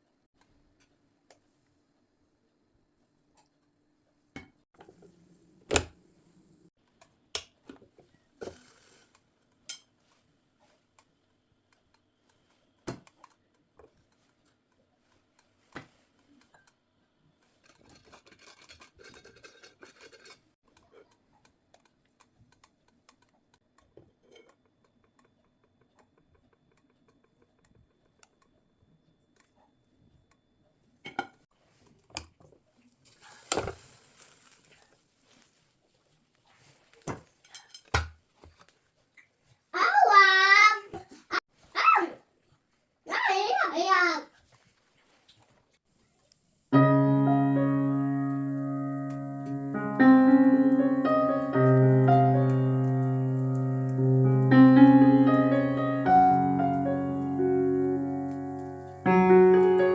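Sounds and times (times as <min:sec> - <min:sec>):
scraping or rustling: 0:17.5 - 0:20.6, 0:33.1 - 0:37.5.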